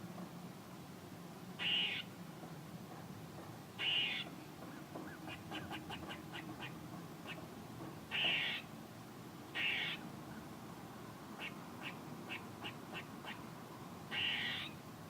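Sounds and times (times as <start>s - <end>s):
squirrel harsh calls: 1.6s - 2.1s, 3.8s - 4.3s, 8.1s - 8.7s, 9.6s - 10.0s, 11.4s - 13.5s, 14.1s - 14.8s.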